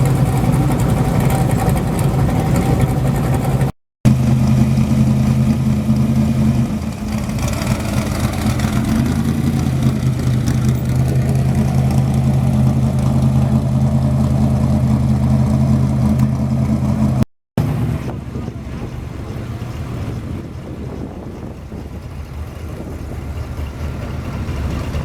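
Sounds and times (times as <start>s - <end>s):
car engine idling: 0.0s - 25.0s.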